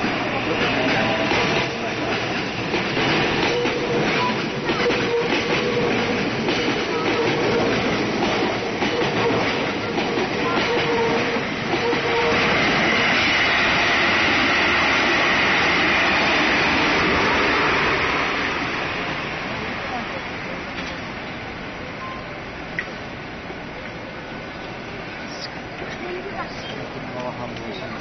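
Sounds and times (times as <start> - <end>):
train wheels clattering: 0.0 - 18.7.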